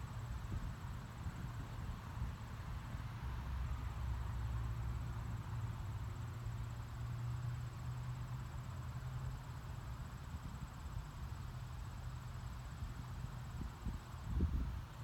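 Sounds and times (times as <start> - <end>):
soft hiss of breeze: 0.0 - 15.0
wind buffeting microphone: 13.6 - 14.9.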